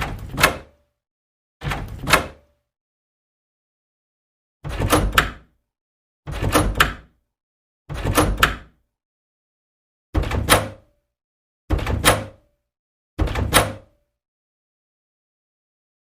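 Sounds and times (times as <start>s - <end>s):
door rattling and clacking: 0.0s - 0.7s, 1.6s - 2.4s, 4.7s - 5.5s, 6.3s - 7.2s, 7.9s - 8.8s, 10.2s - 10.9s, 11.7s - 12.4s, 13.2s - 13.9s.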